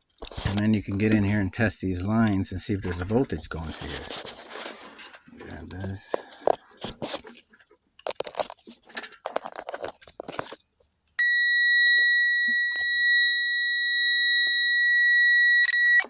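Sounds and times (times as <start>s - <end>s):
handling of wires: 0.0s - 1.5s, 2.7s - 11.0s
circuit tester high beep: 11.2s - 16.0s.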